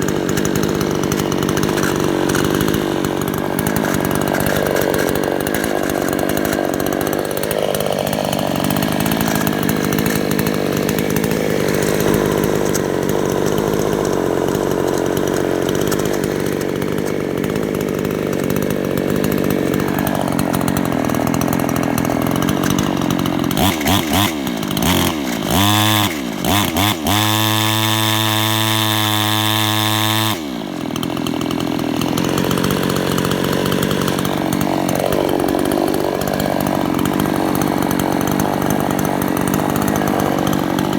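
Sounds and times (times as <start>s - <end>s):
motor running with rattling: 0.0s - 40.9s.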